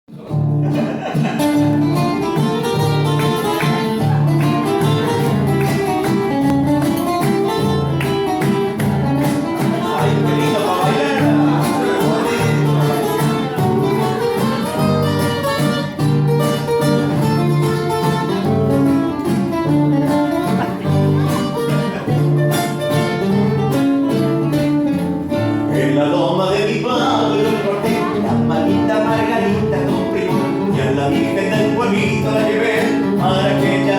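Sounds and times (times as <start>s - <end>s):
guitars picking melody and chords: 0.1s - 33.9s.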